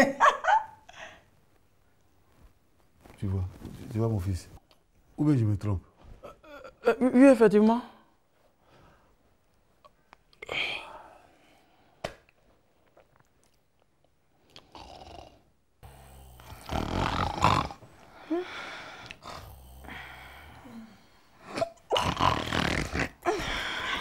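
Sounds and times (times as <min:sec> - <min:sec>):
person snoring loudly: 0:14.6 - 0:24.0.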